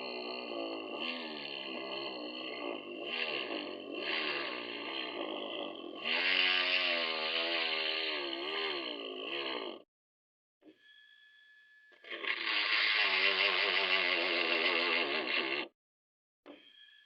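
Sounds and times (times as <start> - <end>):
electric drill motor running: 12.0 - 15.7.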